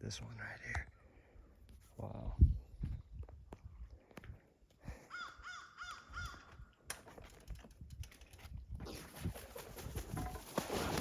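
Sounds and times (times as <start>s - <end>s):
bird giving harsh calls: 5.1s - 6.5s.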